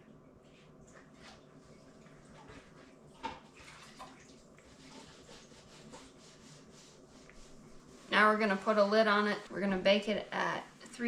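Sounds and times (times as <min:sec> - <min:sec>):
wet squishing of hands rubbing: 0:00.5 - 0:08.8.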